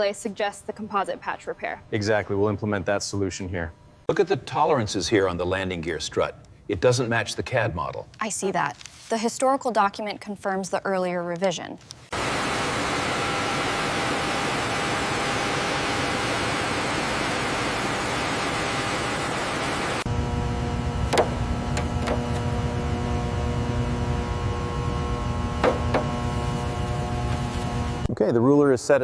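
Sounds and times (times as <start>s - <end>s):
low machine hum: 12.1s - 28.1s.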